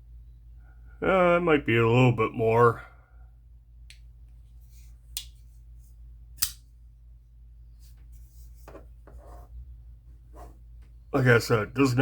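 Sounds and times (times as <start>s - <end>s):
folding knife clicking open: 6.4s - 6.6s.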